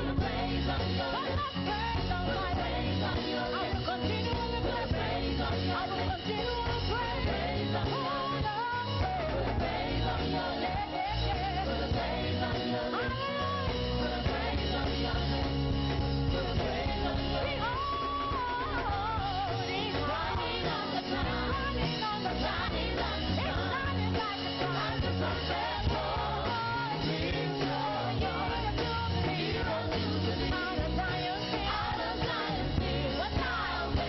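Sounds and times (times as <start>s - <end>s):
band playing: 0.0s - 34.0s.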